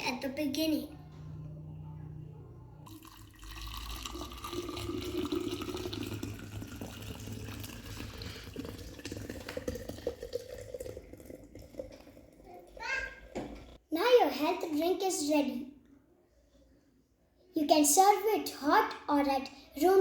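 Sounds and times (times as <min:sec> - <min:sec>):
hot drink pouring into vessel: 0:02.8 - 0:12.8.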